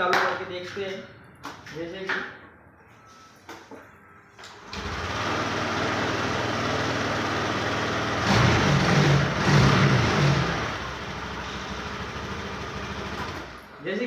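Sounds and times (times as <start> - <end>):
scooter engine starting and revving: 4.6 - 13.7.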